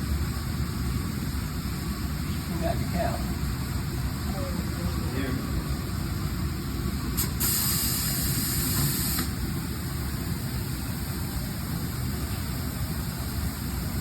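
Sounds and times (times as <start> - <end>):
compressed air hissing: 7.1 - 9.5.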